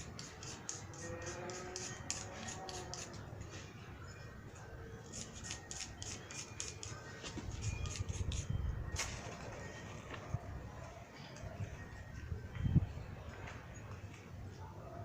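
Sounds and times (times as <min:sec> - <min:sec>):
striker scraping flint: 0:00.0 - 0:03.2, 0:05.1 - 0:08.5.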